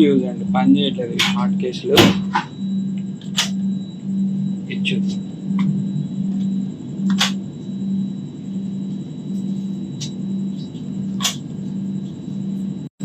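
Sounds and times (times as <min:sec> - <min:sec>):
train coach hum and rumble: 0:00.0 - 0:07.7.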